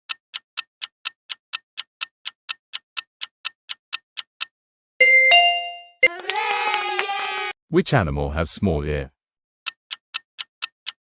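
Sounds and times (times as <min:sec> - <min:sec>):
clock ticking: 0:00.0 - 0:04.6, 0:09.6 - 0:11.0
bright chime: 0:05.0 - 0:06.2.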